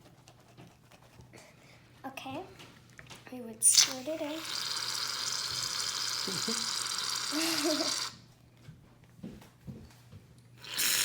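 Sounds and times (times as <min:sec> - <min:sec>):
aerosol can spraying foam: 0:03.7 - 0:05.9.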